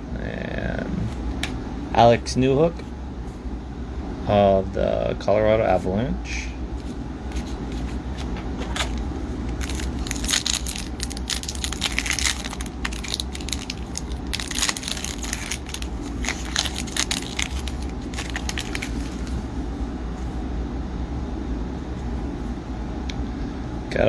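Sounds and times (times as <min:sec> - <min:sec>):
foil wrapper crinkling and tearing: 0:08.7 - 0:19.5.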